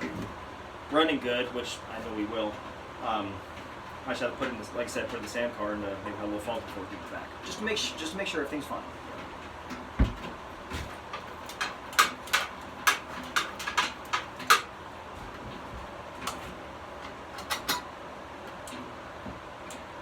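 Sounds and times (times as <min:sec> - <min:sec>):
dull thump: 0:10.0 - 0:10.9
hard objects clicking and knocking: 0:11.2 - 0:14.7.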